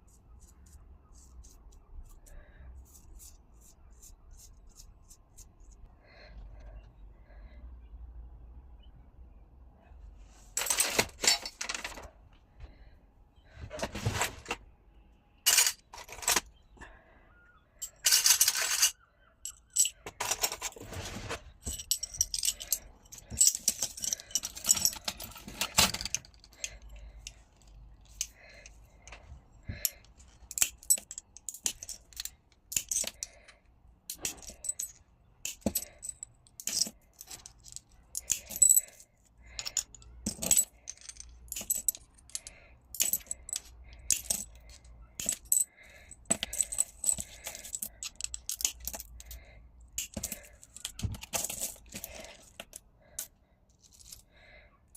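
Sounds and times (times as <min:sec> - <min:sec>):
glass pieces clinking: 0:17.8 - 0:28.8, 0:29.7 - 0:33.5, 0:34.1 - 0:54.2
glass pieces scraping: 0:17.8 - 0:54.2.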